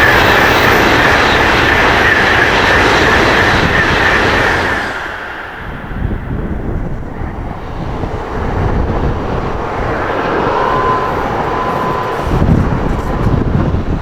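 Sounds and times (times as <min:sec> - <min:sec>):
train passing at speed: 0:00.0 - 0:14.0
brief thin tone: 0:10.0 - 0:13.6.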